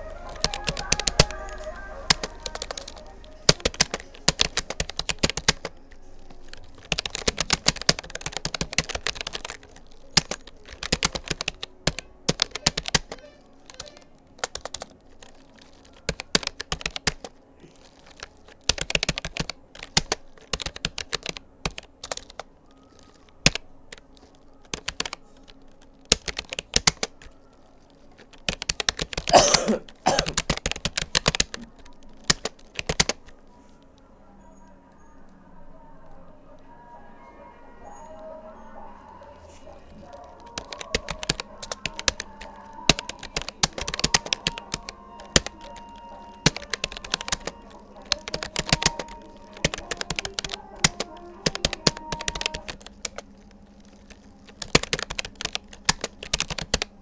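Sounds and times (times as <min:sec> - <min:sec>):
keyboard key clicks: 0:00.3 - 0:27.4, 0:28.2 - 0:33.3, 0:39.9 - 0:53.2.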